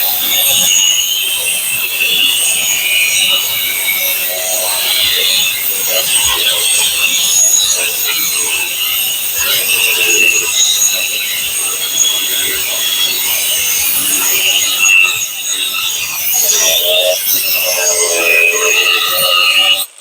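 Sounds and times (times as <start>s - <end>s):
angle grinder cutting metal: 0.2s - 20.0s.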